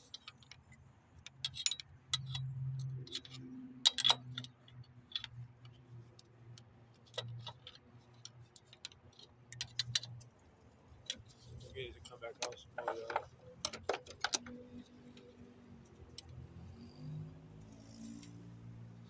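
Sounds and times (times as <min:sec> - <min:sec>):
metallic tool clicks: 0:01.3 - 0:05.4.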